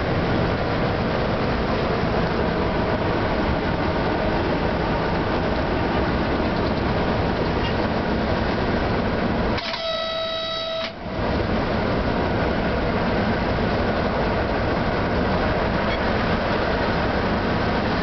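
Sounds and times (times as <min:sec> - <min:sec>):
electric locomotive running: 0:00.0 - 0:18.0
train horn blast: 0:09.6 - 0:11.0.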